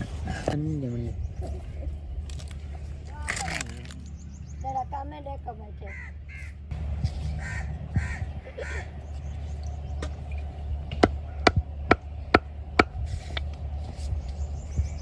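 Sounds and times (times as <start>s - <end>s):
steady low hum: 0.0s - 15.0s
crow-like cawing: 5.8s - 6.6s, 7.4s - 8.9s.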